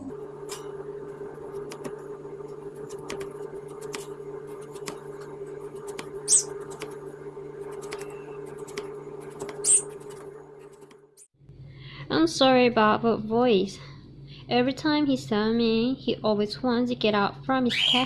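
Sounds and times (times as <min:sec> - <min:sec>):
bird squeaky calls: 0:06.3 - 0:06.6, 0:09.6 - 0:09.9, 0:17.7 - 0:18.0.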